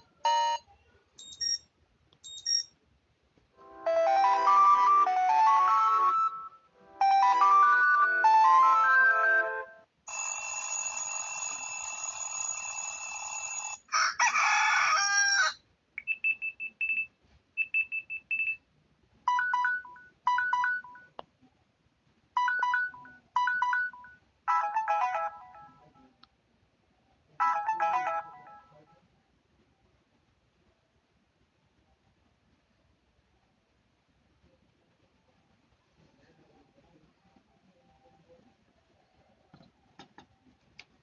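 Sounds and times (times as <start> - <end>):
short high beeps: 2.2 - 2.7.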